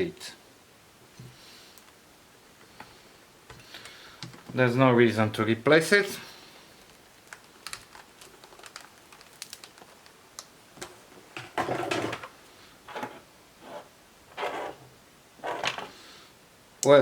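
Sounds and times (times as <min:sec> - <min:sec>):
short scraping sounds: 0:12.9 - 0:14.8.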